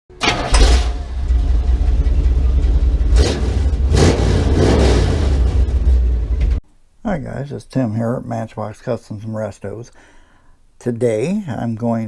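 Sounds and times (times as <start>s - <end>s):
car engine rumbling and revving: 0.2s - 6.6s.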